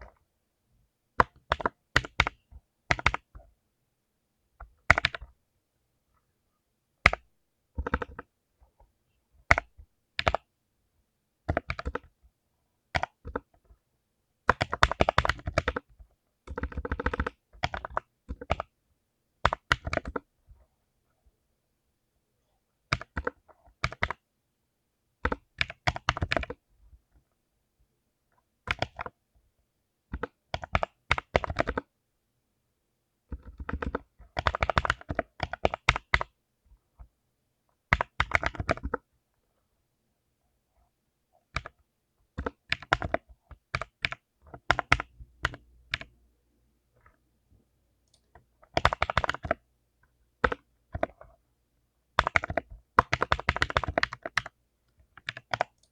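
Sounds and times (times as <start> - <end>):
mechanical keyboard typing: 1.2 - 3.3, 4.6 - 5.3, 7.0 - 8.3, 9.5 - 10.5, 11.5 - 12.2, 12.9 - 13.7, 14.4 - 15.9, 16.5 - 18.7, 19.4 - 20.3, 22.9 - 24.2, 25.2 - 26.6, 28.6 - 29.2, 30.1 - 31.9, 33.3 - 36.4, 37.9 - 39.1, 41.5 - 46.1, 48.1 - 49.6, 50.4 - 51.3, 52.2 - 55.9.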